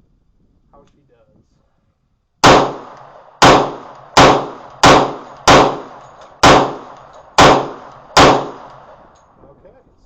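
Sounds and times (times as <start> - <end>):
pistol shots echoing: 2.4 - 9.2.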